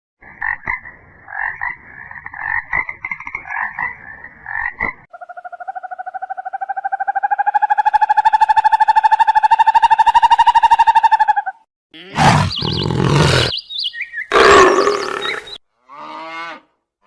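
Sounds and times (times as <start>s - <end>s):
frogs croaking: 0.2s - 9.9s, 12.2s - 15.6s.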